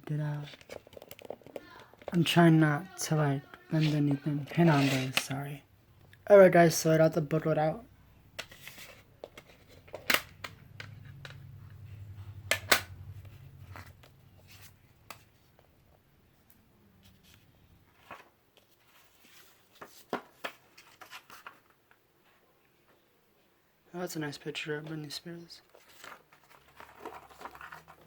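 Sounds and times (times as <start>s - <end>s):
paper rustling: 3.4s - 5.3s, 8.4s - 10.1s, 17.0s - 21.8s, 25.6s - 28.0s.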